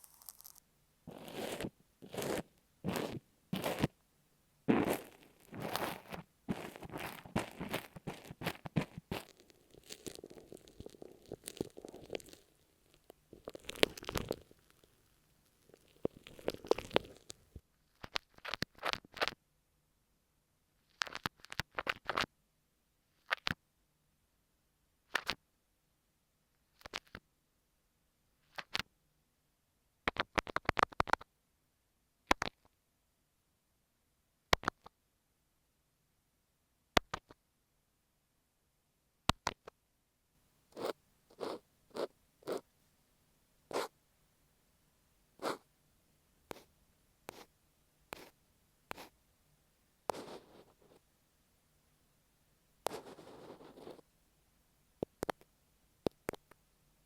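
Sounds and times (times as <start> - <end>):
earphone microphone being scratched: 0.0 - 3.9, 4.7 - 12.4, 52.9 - 54.0.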